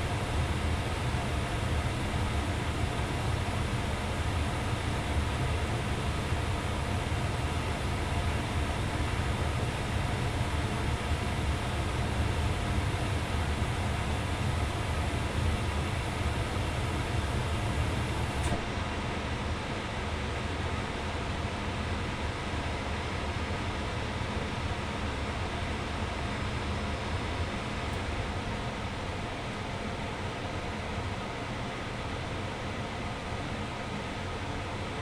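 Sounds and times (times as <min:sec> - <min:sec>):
furnace blower rumble: 0:00.0 - 0:19.4.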